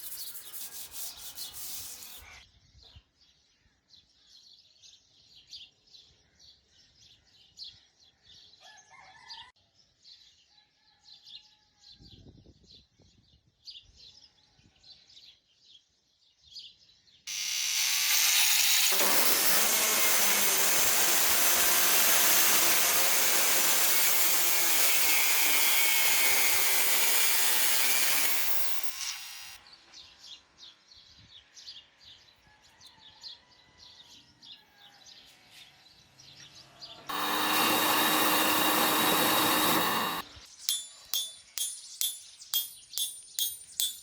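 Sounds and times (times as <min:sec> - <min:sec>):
hand scraping steel blade: 0:00.0 - 0:02.3, 0:17.3 - 0:29.6, 0:37.1 - 0:44.0
power grinder on metal: 0:00.0 - 0:02.3, 0:17.3 - 0:29.6, 0:37.1 - 0:44.0.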